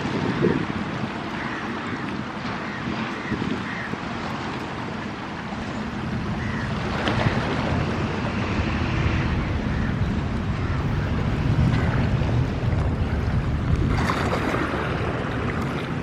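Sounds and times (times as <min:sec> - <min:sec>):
wind buffeting microphone: 0:00.0 - 0:16.0
low rumble: 0:07.4 - 0:15.7.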